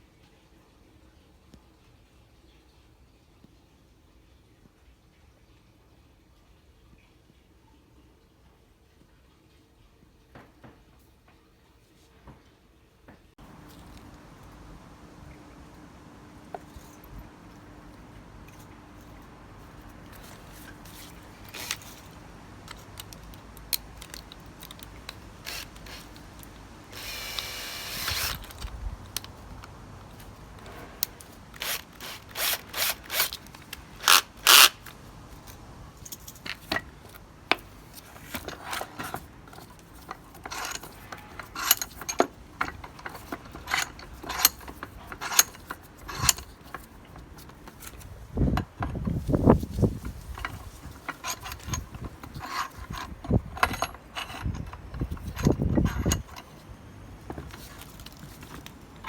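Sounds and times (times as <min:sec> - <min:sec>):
metal tools clicking and clinking: 0:13.4 - 0:59.0
rasping burst: 0:30.6 - 0:34.8.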